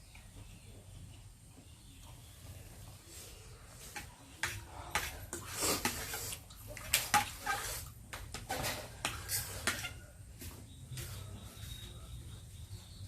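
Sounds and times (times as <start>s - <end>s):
slurping noodles: 5.4s - 7.9s.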